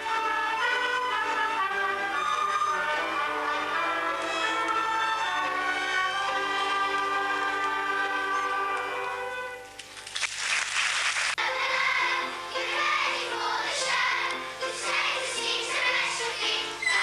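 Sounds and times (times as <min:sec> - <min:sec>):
held instrumental notes: 0:00.0 - 0:09.9
singing with accompaniment: 0:11.4 - 0:17.0.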